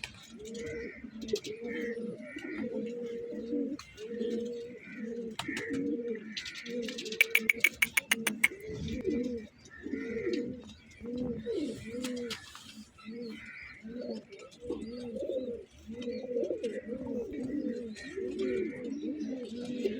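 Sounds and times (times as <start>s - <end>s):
pigeons cooing: 0.0s - 19.9s.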